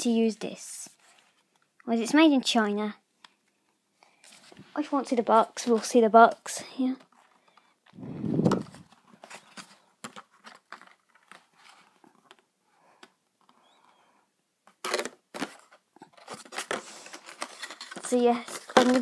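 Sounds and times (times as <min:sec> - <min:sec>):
cardboard packaging rustling: 0:07.0 - 0:12.5, 0:14.8 - 0:19.0.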